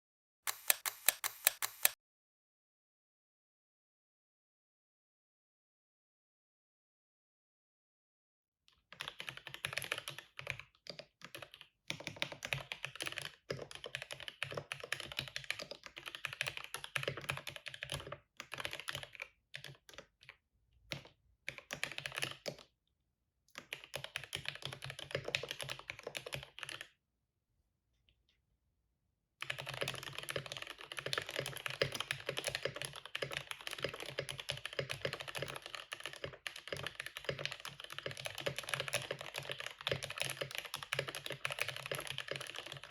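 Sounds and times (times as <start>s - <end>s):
typing on mechanical keyboard: 0.5s - 2.0s, 8.7s - 22.7s, 23.6s - 26.9s, 29.4s - 42.9s.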